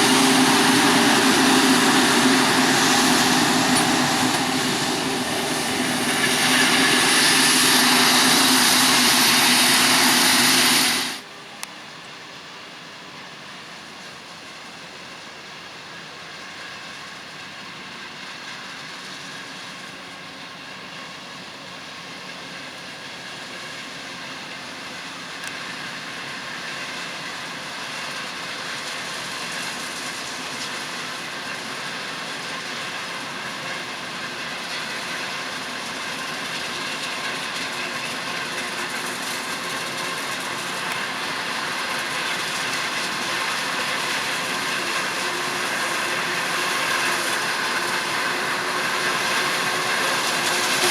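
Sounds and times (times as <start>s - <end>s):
mechanical whine: 0.0s - 11.2s
forage harvester working: 0.0s - 50.9s.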